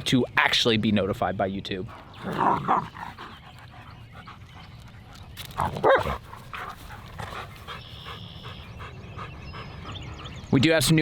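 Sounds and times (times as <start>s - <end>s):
dog barking: 5.8s - 6.2s.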